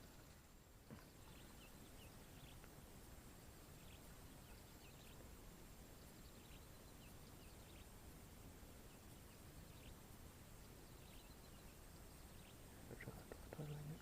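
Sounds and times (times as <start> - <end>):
faint high bird chirps: 0.0 - 2.7, 3.5 - 5.3, 5.9 - 8.0, 8.8 - 14.0.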